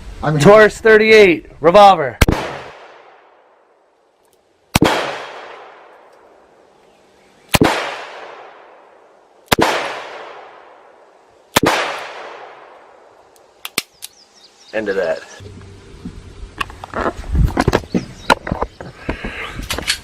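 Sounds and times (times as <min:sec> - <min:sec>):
revolver gunshots with echo: 0:02.2 - 0:03.4, 0:04.7 - 0:05.9, 0:07.5 - 0:13.0.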